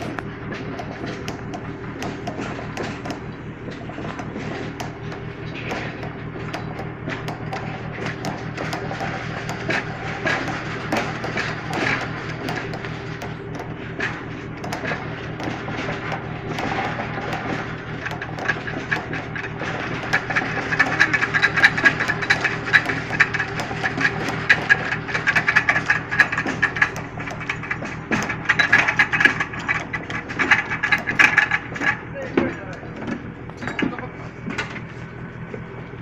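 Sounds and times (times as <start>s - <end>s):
metallic clattering and ratcheting: 0.0s - 35.1s
low engine hum: 0.0s - 36.0s.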